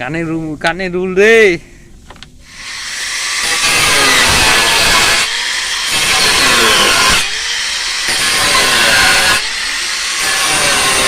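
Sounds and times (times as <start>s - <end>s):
power tool cutting wood: 2.5s - 11.0s.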